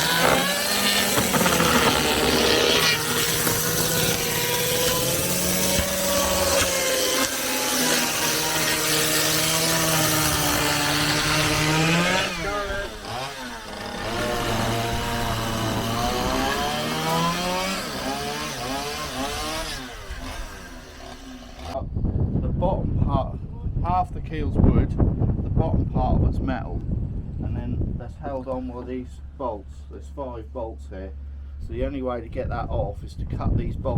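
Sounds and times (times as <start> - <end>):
chainsaw cutting wood: 0.0 - 21.8.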